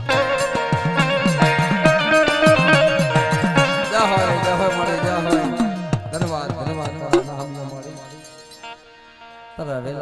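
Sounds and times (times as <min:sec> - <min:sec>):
quick pitch-bending drum beat: 0:00.0 - 0:08.7
plucked string instrument: 0:00.0 - 0:10.0.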